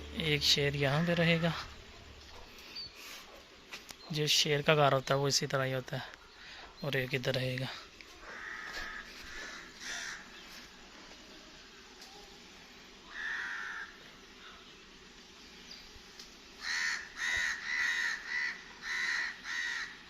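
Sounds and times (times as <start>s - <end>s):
birds cawing: 8.1s - 10.7s, 13.0s - 14.7s, 16.6s - 20.0s.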